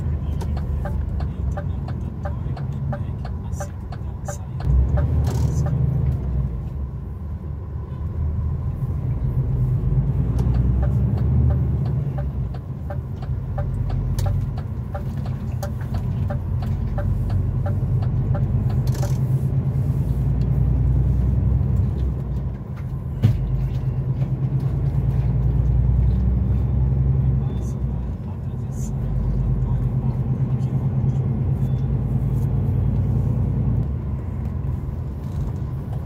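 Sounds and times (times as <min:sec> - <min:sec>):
diesel truck engine from cab: 0:00.0 - 0:36.0.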